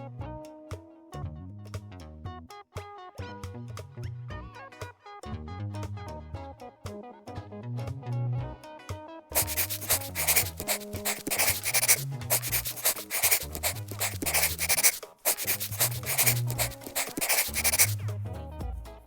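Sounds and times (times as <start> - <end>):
pen scribbling on paper: 9.4 - 18.0.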